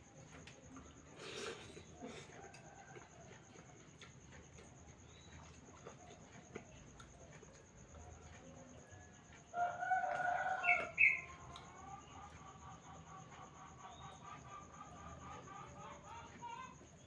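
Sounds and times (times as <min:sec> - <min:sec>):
rooster crowing: 0:09.5 - 0:11.3.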